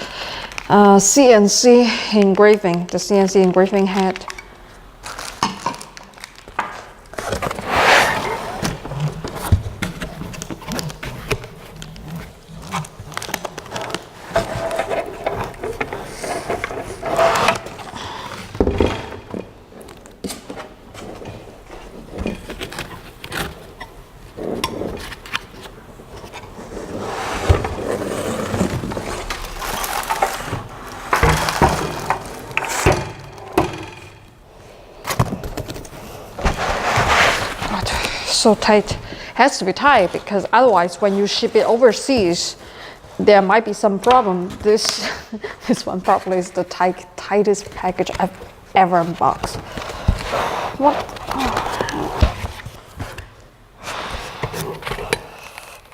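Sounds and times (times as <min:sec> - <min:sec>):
parts scraping in packaging: 0:05.0 - 0:18.6, 0:22.4 - 0:33.2.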